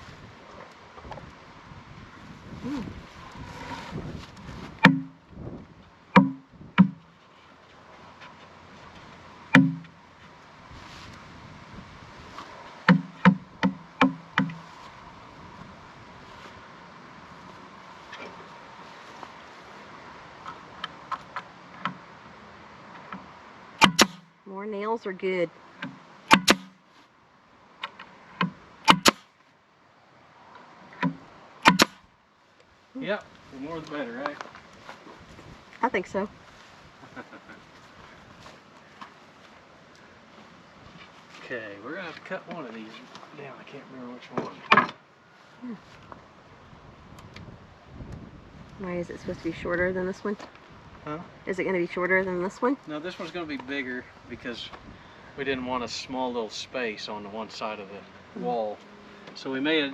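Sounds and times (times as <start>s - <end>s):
hammering nails into wood: 4.8s - 5.2s, 6.2s - 7.0s, 9.6s - 9.9s, 12.9s - 14.6s, 23.8s - 24.2s, 25.8s - 26.7s, 28.4s - 29.2s, 31.0s - 32.0s
nails driven into wood: 23.8s - 24.2s, 25.8s - 26.8s, 28.4s - 29.3s, 31.0s - 32.0s.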